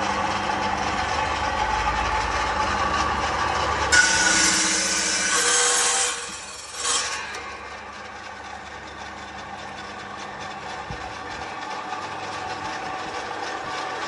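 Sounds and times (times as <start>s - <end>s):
power tool running: 0.0s - 14.0s
cutter cutting into wood: 3.8s - 7.6s.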